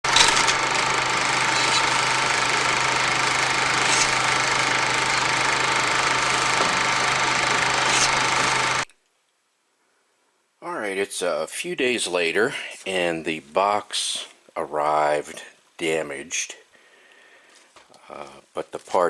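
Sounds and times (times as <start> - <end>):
snowblower engine running: 0.0 - 8.8.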